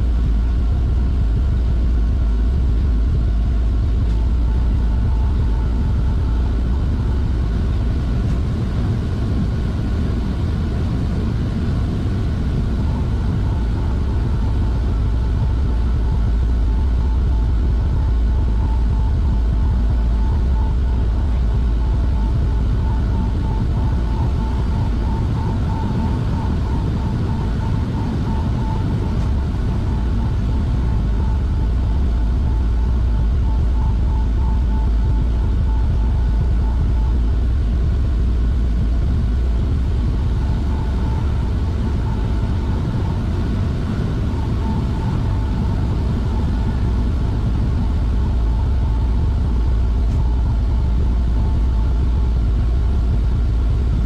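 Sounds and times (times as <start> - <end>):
machinery low hum: 0.0 - 54.0
faint wavering high tone: 12.2 - 37.8, 40.2 - 53.6.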